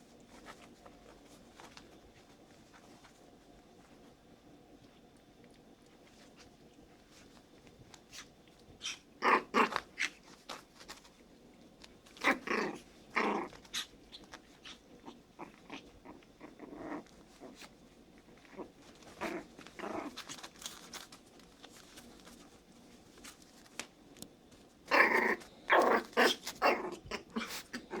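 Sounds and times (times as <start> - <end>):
puppies growling: 8.7 - 11.0, 12.0 - 20.7, 24.8 - 28.0.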